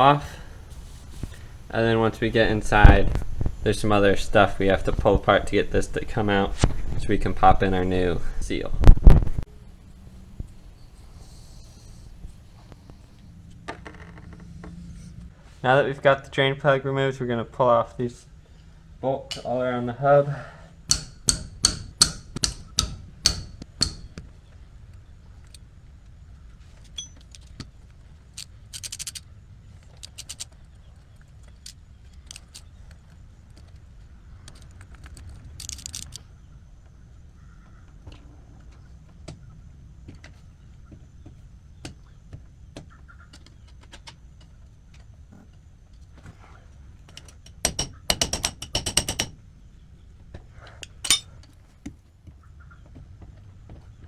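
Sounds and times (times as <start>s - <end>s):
wrench and bolts clinking: 20.9s - 24.2s, 26.8s - 27.6s, 28.3s - 29.3s, 29.9s - 30.6s, 31.4s - 32.7s, 34.5s - 36.2s, 47.1s - 49.4s, 50.8s - 51.4s.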